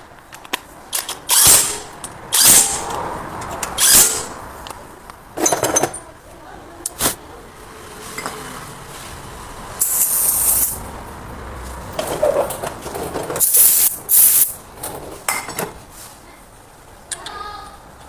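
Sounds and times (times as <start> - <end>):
metal tools knocking and clinking: 5.4 - 6.0
hissing air sprays: 9.8 - 10.8, 13.4 - 14.6.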